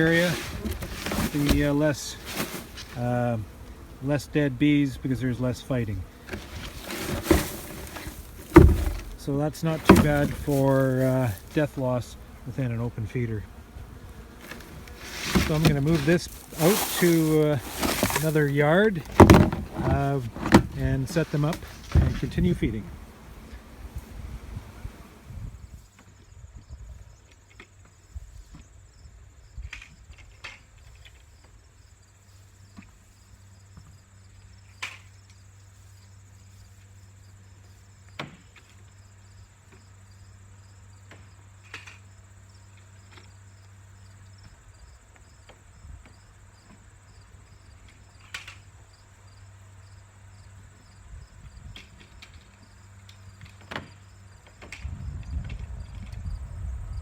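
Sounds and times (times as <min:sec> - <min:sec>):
crickets chirping: 0:31.3 - 0:57.0.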